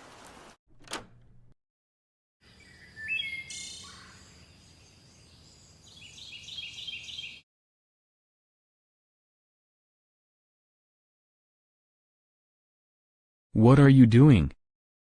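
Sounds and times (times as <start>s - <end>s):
birds chirping: 2.4s - 7.4s
faint outdoor background: 2.4s - 7.4s.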